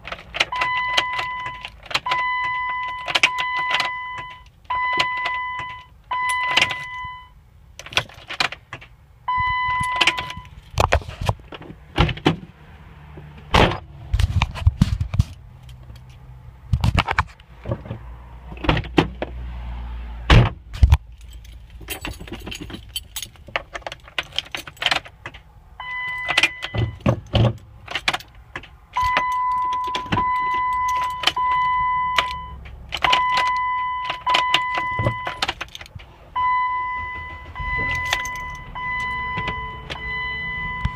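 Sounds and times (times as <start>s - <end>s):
electronic warning chime beeping: 0.6s - 7.3s, 9.3s - 10.5s, 29.0s - 35.4s, 36.4s - 40.9s
keys jangling: 21.1s - 25.4s, 29.0s - 33.6s, 34.6s - 36.0s, 37.8s - 39.1s.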